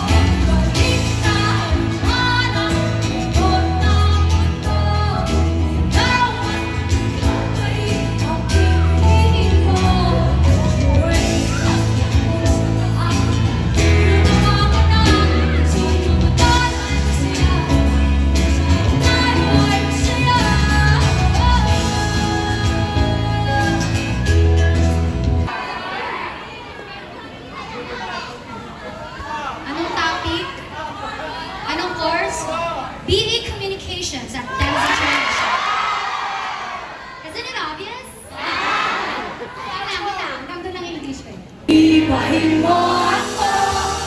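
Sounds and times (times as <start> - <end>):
person singing: 0.0 - 25.0, 41.7 - 44.0
heavy bass line: 0.0 - 25.5.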